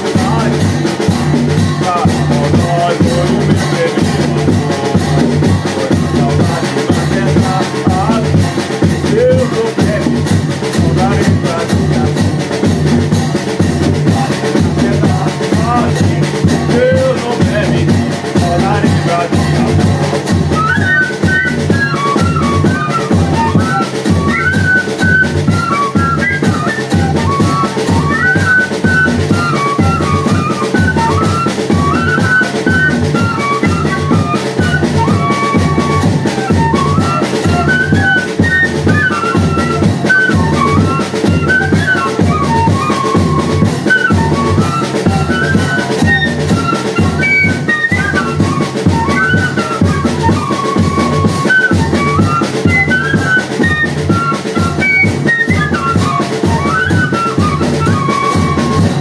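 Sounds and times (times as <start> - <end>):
bass drum beat: 0.0 - 53.1
fife melody: 0.0 - 59.0
snare drum: 0.0 - 59.0.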